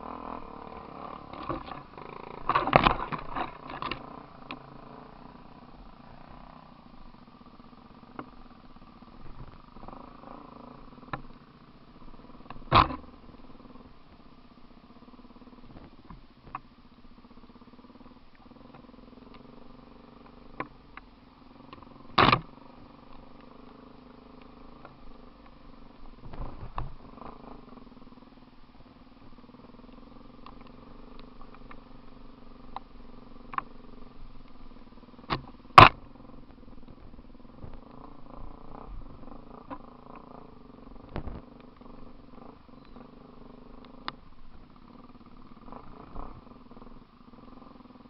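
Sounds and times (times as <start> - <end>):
vehicle engine idling: 0.0 - 48.0.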